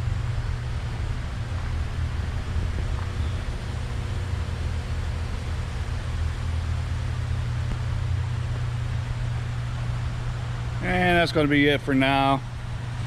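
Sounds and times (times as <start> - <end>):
constant hiss: 0.0 - 13.0
low mechanical hum: 0.0 - 13.0.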